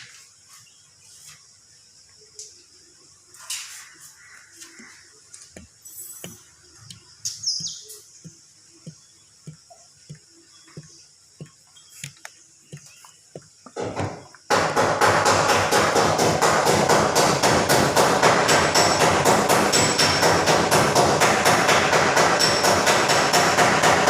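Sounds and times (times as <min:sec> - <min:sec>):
faint bird chirps: 0:00.0 - 0:13.8
rapid hammering: 0:07.6 - 0:24.0.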